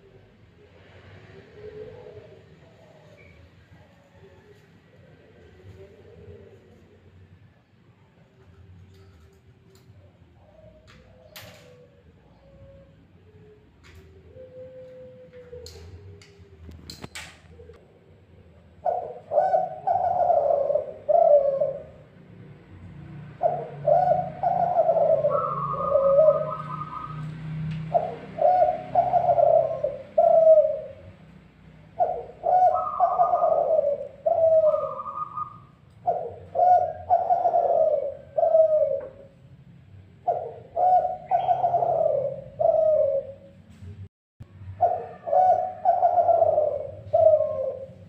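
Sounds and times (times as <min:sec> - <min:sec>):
dove cooing: 0:00.0 - 0:43.8, 0:44.7 - 0:48.0.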